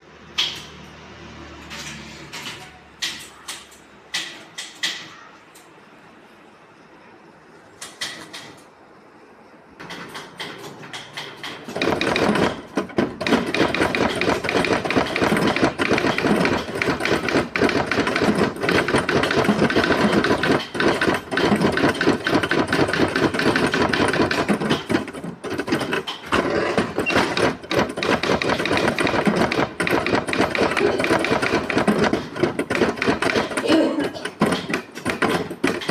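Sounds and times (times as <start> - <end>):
typewriter typing fast: 9.8 - 35.9.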